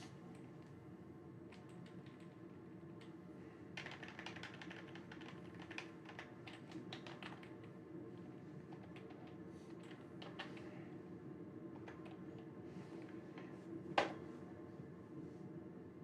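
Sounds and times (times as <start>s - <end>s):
computer keyboard typing: 3.8s - 7.7s.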